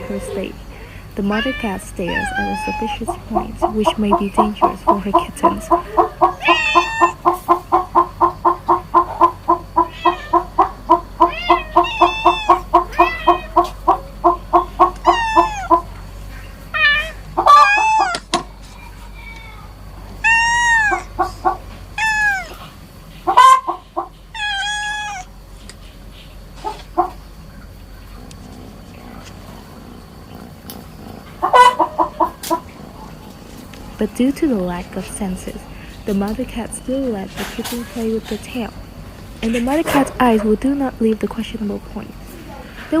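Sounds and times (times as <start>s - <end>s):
chicken clucking: 0.0s - 16.6s, 17.2s - 19.4s, 20.2s - 34.0s
kitten meowing: 1.2s - 3.2s, 6.3s - 7.3s, 9.8s - 10.5s, 11.2s - 13.8s, 14.8s - 15.8s, 16.7s - 18.3s, 20.2s - 21.2s, 22.0s - 22.7s, 24.3s - 25.3s.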